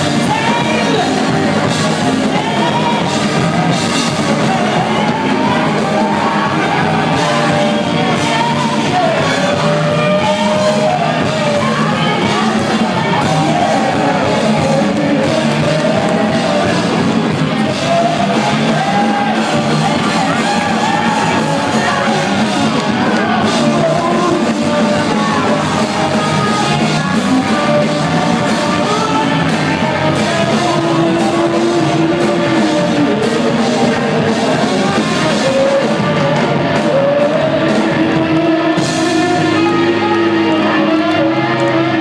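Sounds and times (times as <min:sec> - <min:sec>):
rock band playing live: 0:00.0 - 0:42.0.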